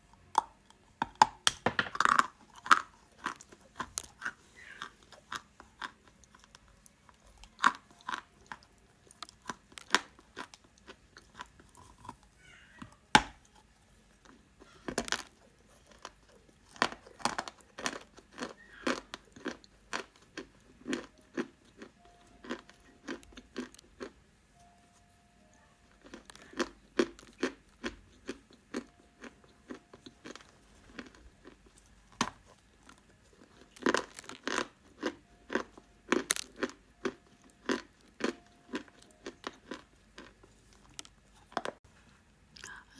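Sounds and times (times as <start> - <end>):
dry clay crunching being chewed: 0.0 - 41.8.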